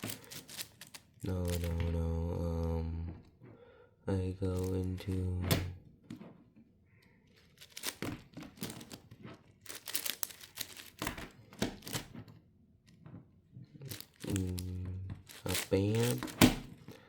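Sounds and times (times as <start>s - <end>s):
puzzle cube clicking: 0.0s - 2.0s.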